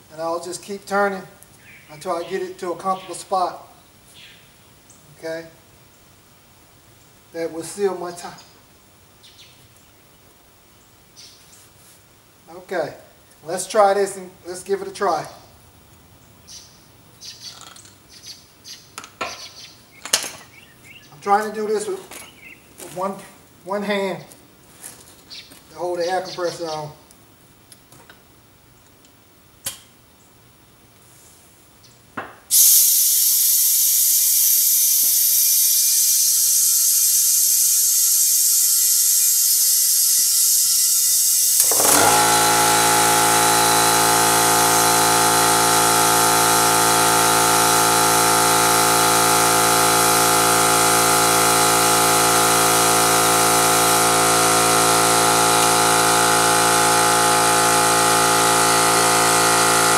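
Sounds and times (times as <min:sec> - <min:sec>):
air compressor motor running: 0:32.5 - 0:59.9
compressed air hissing: 0:32.5 - 0:59.9.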